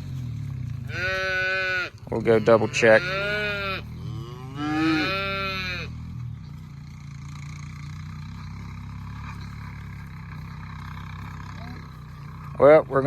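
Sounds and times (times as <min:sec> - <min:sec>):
low engine hum: 0:00.0 - 0:13.0
cattle mooing: 0:00.7 - 0:06.1.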